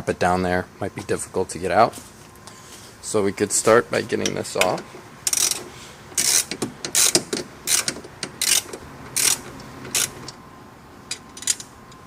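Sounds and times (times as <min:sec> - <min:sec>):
ratchet wrench clicking: 0:05.3 - 0:05.6, 0:06.2 - 0:10.2.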